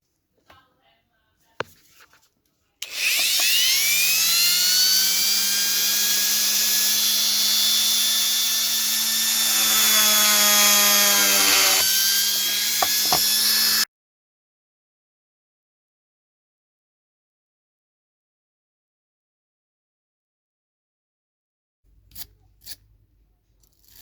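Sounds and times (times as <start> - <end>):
rotary engraver whining: 2.8 - 13.9.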